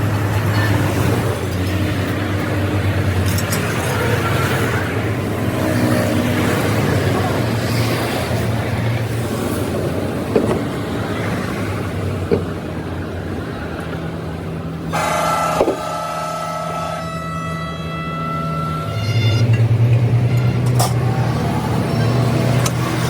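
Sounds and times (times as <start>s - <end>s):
traffic noise: 0.0s - 23.0s
vehicle engine humming: 0.0s - 23.0s.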